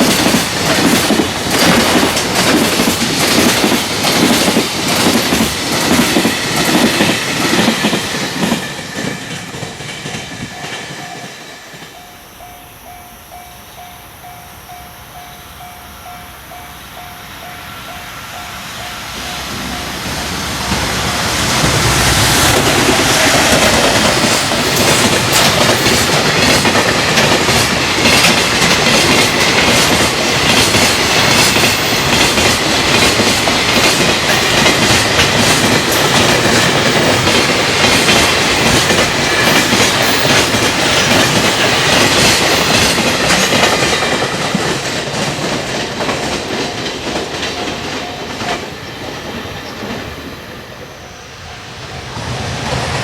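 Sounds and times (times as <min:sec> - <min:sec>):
train wheels clattering over rail joints: 0:00.0 - 0:12.0, 0:20.6 - 0:50.2.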